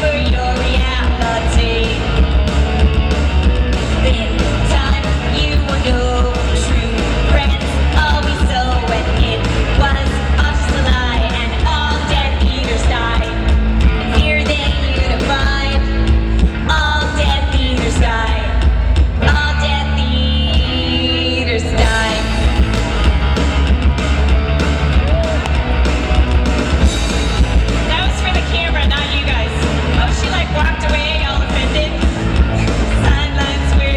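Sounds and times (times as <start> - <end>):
heavy bass: 0.0 - 33.9
loud drums: 0.0 - 33.9
rock band playing live: 0.0 - 33.9
person singing: 19.2 - 22.8, 27.9 - 33.9.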